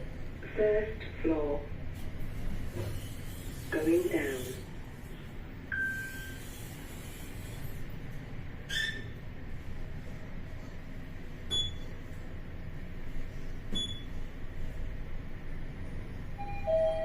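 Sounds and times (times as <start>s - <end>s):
lift humming: 3.7s - 17.0s.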